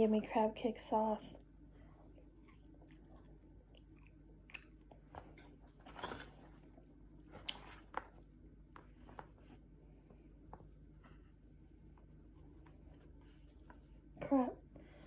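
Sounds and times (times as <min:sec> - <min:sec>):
person chewing food: 0:01.9 - 0:09.4.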